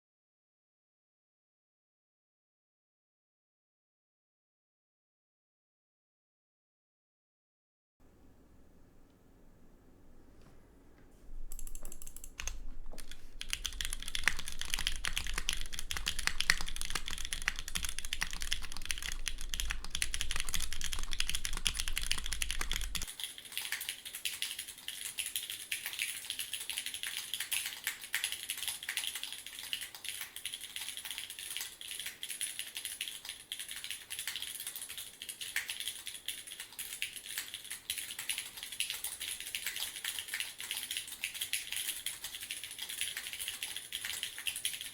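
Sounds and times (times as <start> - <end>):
fast mechanical keyboard typing: 11.4 - 44.9.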